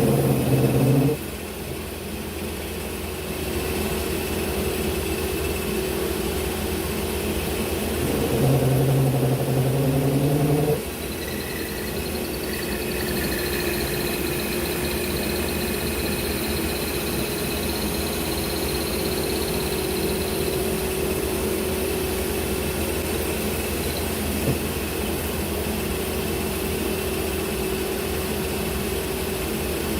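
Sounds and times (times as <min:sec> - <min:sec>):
table saw running: 0:00.0 - 0:01.4, 0:03.8 - 0:25.0
faint high whine: 0:03.6 - 0:24.9
louder hum: 0:07.8 - 0:18.2.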